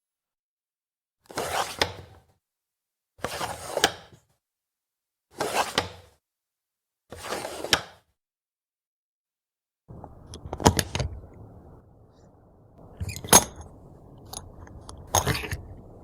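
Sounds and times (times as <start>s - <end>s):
metal peephole cover scraping: 9.9s - 16.0s.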